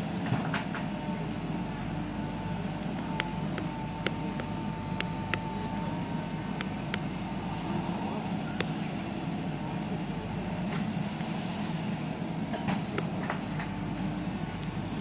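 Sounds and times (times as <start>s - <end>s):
diesel engine running: 0.0s - 15.0s
thin whine: 0.9s - 12.1s.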